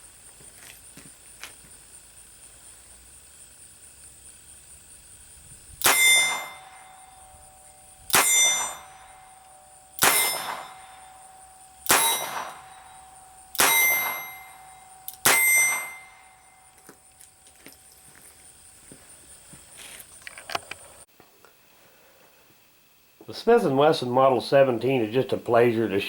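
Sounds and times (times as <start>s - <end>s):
revolver shots: 5.8s - 16.5s
short metallic ring: 5.8s - 18.1s.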